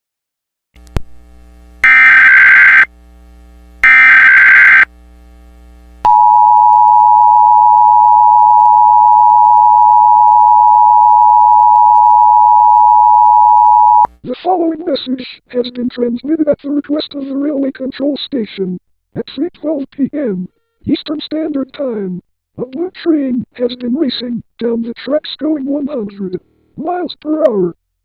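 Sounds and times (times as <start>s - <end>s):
buzzy digital header bursts: 1.8s - 2.9s, 3.8s - 4.9s
two-tone attention signal: 6.1s - 14.1s.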